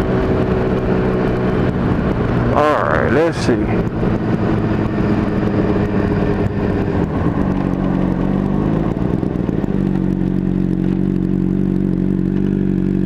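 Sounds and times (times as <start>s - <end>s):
wind rushing noise: 0.0s - 9.8s
motorcycle engine running: 0.0s - 13.0s.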